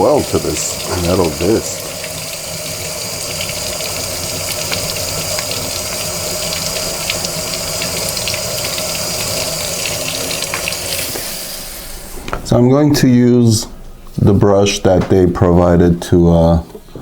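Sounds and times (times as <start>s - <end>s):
tap water running onto metal: 0.0s - 11.9s.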